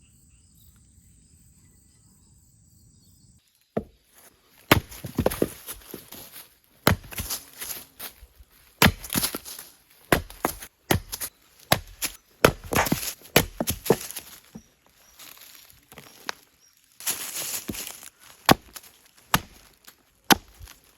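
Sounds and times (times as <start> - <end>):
axe chopping wood: 4.6 - 6.2, 6.8 - 7.8, 8.8 - 14.6, 17.5 - 20.8
wood cracking and splintering: 4.6 - 6.2, 8.8 - 14.6, 15.4 - 20.9.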